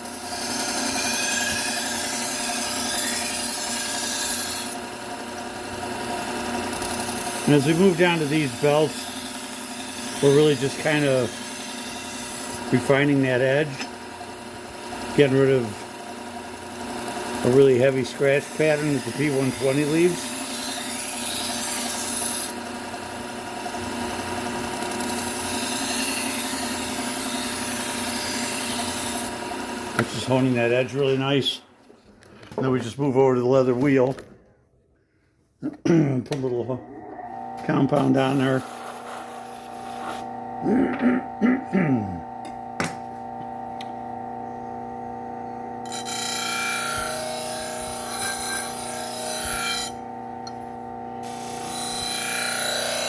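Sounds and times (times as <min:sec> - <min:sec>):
sander motor hum: 0:00.0 - 0:31.3, 0:36.8 - 0:53.0
knife grinding on belt sander: 0:00.0 - 0:31.4, 0:36.8 - 0:53.0
knife grinding on belt: 0:38.2 - 0:40.8.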